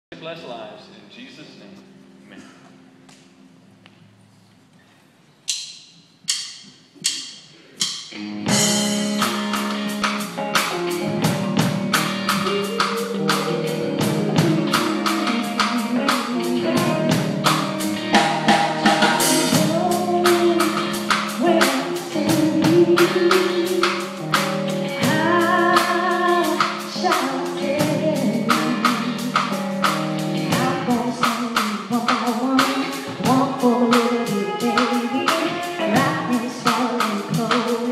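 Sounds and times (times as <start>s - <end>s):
guitar: 0.1s - 4.9s, 8.1s - 37.9s
drum kit fast beat: 6.3s - 37.9s
person singing: 12.2s - 18.1s, 19.2s - 24.3s, 24.9s - 29.6s, 30.4s - 37.9s.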